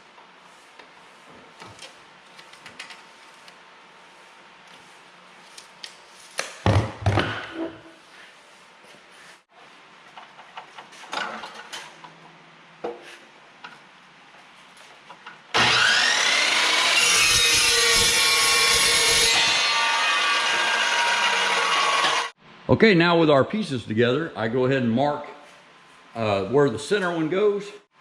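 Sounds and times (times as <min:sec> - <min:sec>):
power saw cutting steel: 0:15.5 - 0:22.4.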